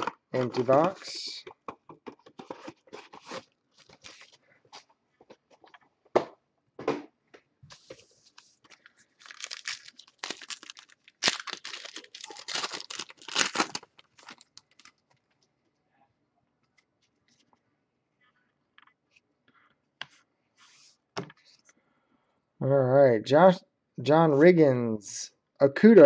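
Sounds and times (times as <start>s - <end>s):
wrappers tearing and crinkling: 8.7s - 15.0s.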